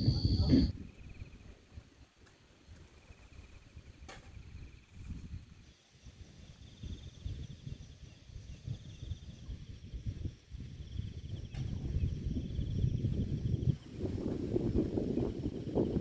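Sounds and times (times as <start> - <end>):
insect trilling: 0.0 - 1.4
wind buffeting microphone: 0.0 - 16.0.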